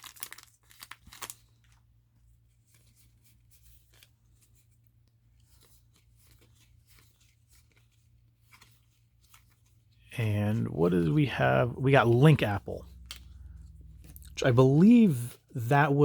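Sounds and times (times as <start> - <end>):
cards clicking and rustling: 0.0 - 1.9, 2.6 - 10.0, 12.0 - 14.3
low steady hum: 1.6 - 16.0.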